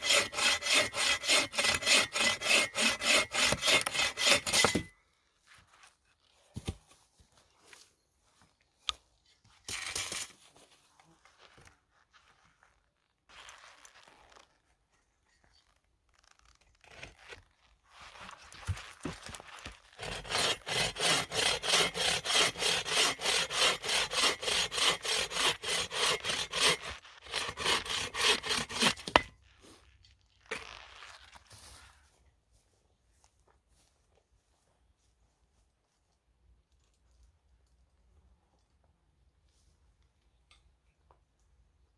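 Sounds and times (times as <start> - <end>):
hand saw cutting wood: 0.0 - 4.9, 9.7 - 10.4, 20.0 - 29.4
rubbing and scraping: 0.0 - 4.9, 18.0 - 29.4.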